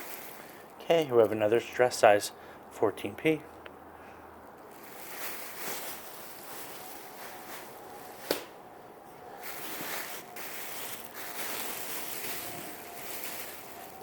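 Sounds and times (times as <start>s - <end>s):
plastic bags crinkling: 0.0s - 1.4s, 4.6s - 8.3s, 9.3s - 14.0s.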